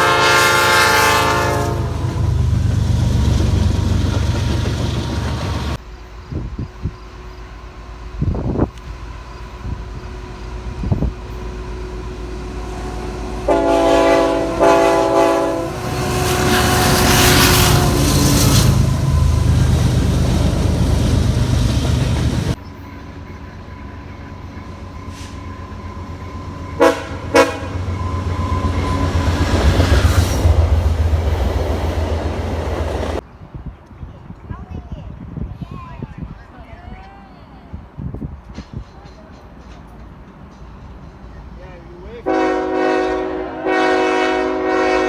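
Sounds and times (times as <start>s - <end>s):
locomotive air horn blasts: 0.0s - 2.4s, 12.2s - 19.8s, 25.1s - 30.2s, 42.2s - 45.0s
train horn toots: 0.0s - 2.6s, 11.8s - 20.8s, 25.1s - 30.7s, 42.2s - 45.0s
train rumbling past: 0.0s - 45.0s.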